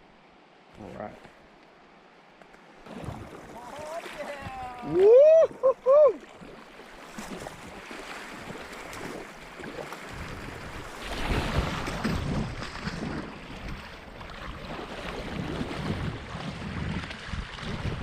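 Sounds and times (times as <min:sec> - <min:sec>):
whitewater rushing: 0:02.9 - 0:07.0
wind buffeting microphone: 0:10.0 - 0:18.0.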